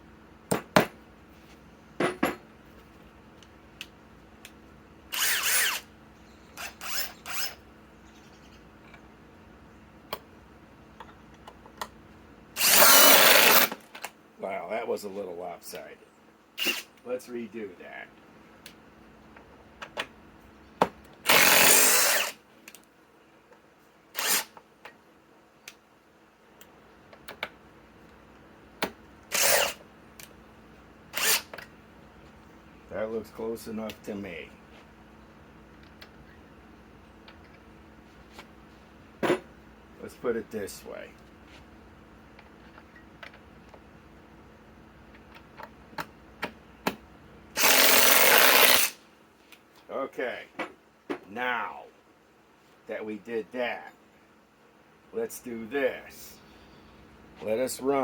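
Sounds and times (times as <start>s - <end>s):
impact driver driving screws: 5.1s - 5.8s, 6.6s - 7.6s, 12.6s - 13.8s, 16.6s - 16.9s, 21.3s - 22.4s, 24.2s - 24.6s, 29.3s - 29.8s, 31.2s - 31.6s, 47.6s - 49.0s.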